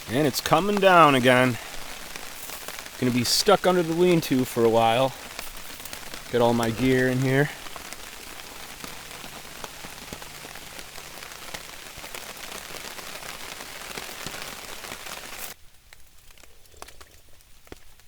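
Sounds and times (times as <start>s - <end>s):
rain drops falling close by: 0.0s - 18.0s
scattered ticks: 15.4s - 18.0s.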